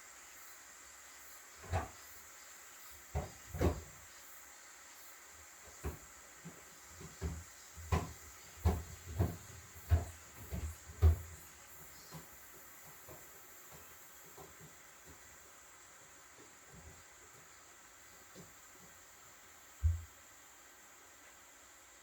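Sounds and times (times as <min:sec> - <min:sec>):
dull knocks and thumps: 0:03.1 - 0:04.1, 0:05.7 - 0:15.3, 0:19.8 - 0:20.2.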